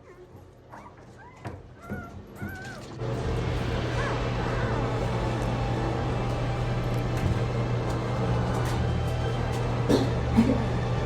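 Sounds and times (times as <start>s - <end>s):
puppy whimpering: 0.0s - 3.0s
loud steady low hum: 3.0s - 11.0s.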